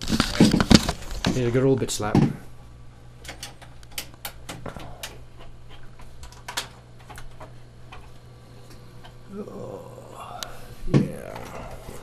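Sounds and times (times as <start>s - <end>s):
low hum: 7.6s - 12.0s.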